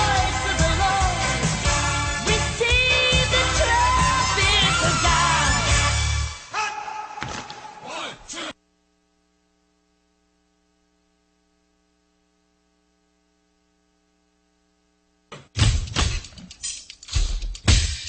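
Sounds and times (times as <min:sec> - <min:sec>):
faint electrical hum: 0:07.7 - 0:15.3
music with heavy booming hits: 0:15.6 - 0:18.0.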